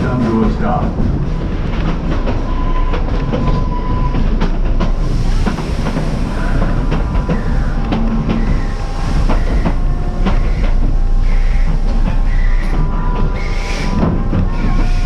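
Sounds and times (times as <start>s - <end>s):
train cars rumbling: 0.0s - 15.0s
wheels clicking over rails: 0.0s - 15.0s
faint thin squeal: 10.4s - 15.0s.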